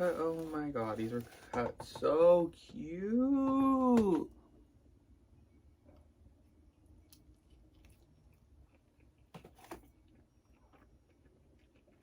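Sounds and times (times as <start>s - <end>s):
quiet room hum: 0.0s - 12.0s
person chewing: 6.7s - 12.0s.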